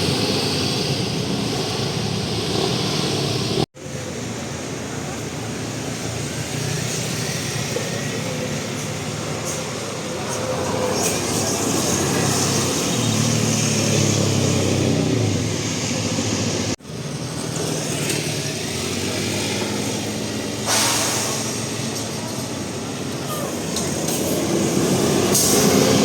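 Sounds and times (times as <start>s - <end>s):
bus diesel engine running: 0.0s - 26.0s
loud hiss: 20.6s - 21.9s, 23.4s - 26.0s.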